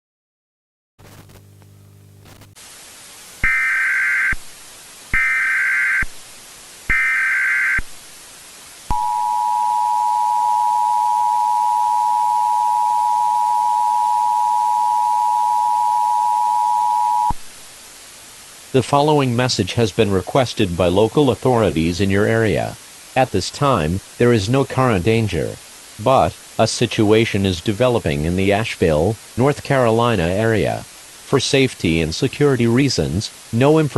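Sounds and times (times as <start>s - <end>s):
low buzz: 1.0s - 2.6s, 8.9s - 17.4s
steady hiss: 1.0s - 10.8s, 17.3s - 33.9s
digital header tones: 8.9s - 17.4s
two-tone attention signal: 8.9s - 17.4s.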